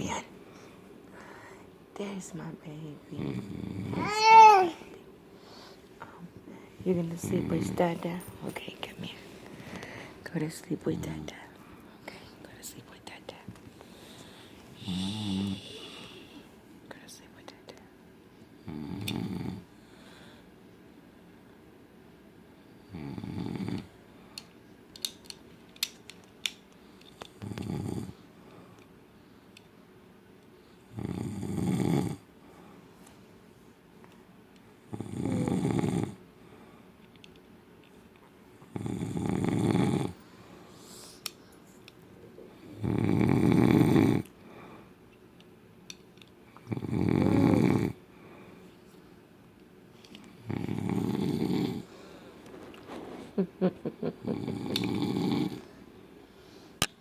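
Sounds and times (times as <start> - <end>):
man snoring loudly: 14.8 - 15.7, 22.9 - 23.9, 27.4 - 28.1, 30.9 - 32.2, 34.9 - 36.2, 38.7 - 40.2, 42.8 - 44.3, 46.7 - 48.0, 50.4 - 51.9, 54.3 - 55.6.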